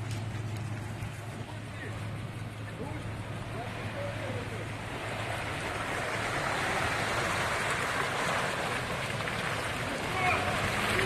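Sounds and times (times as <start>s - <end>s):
engine humming: 0.0s - 11.0s.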